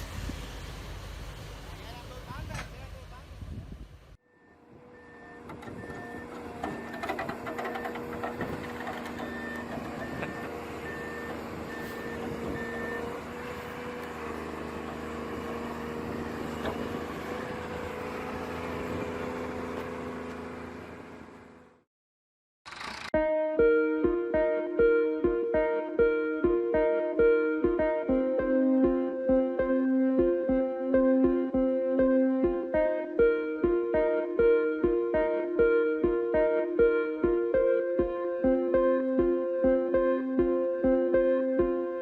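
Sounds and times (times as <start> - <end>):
reversing alarm beeping: 4.2 - 13.7
machinery humming: 4.3 - 21.8.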